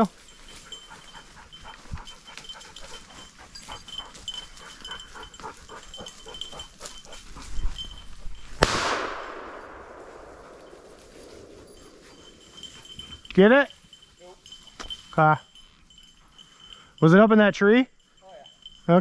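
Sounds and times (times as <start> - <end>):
dog panting: 0.2 - 8.5, 10.4 - 13.4
shotgun shot with echo: 8.6 - 11.5.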